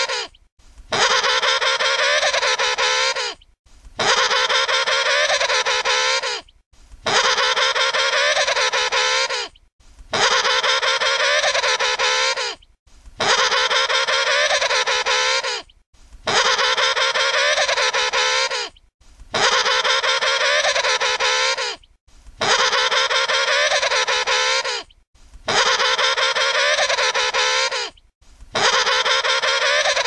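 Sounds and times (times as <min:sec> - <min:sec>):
penguin trumpeting call: 0:00.9 - 0:03.4, 0:04.0 - 0:06.4, 0:07.0 - 0:09.5, 0:10.1 - 0:12.6, 0:13.2 - 0:15.6, 0:16.3 - 0:18.7, 0:19.3 - 0:21.8, 0:22.4 - 0:24.9, 0:25.5 - 0:28.0, 0:28.6 - 0:30.0.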